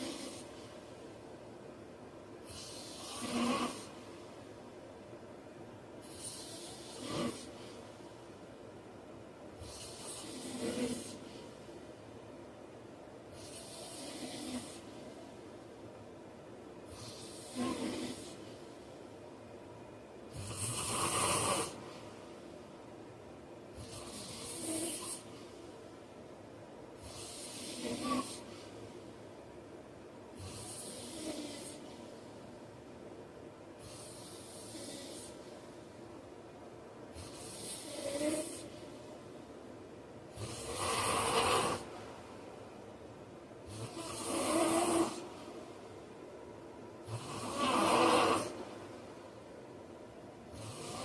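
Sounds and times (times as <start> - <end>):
man snoring: 2.4 - 4.0, 6.0 - 7.6, 9.6 - 11.3, 13.4 - 14.9, 17.0 - 18.4, 20.3 - 21.8, 27.0 - 28.5, 30.4 - 32.0, 40.4 - 42.0, 43.7 - 45.3, 47.0 - 48.6, 50.5 - 51.0.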